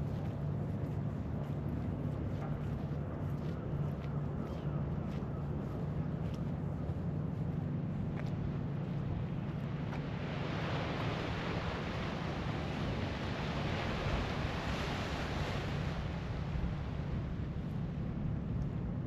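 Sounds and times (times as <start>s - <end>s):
steady low hum: 0.0s - 14.3s, 15.9s - 19.0s
wave washing in: 10.0s - 17.2s.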